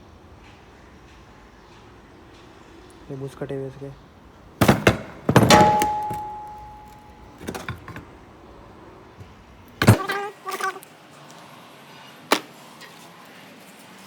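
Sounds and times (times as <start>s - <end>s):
metal tools clanking: 4.6s - 8.3s, 9.2s - 10.8s
ringing metal tone: 5.4s - 8.0s.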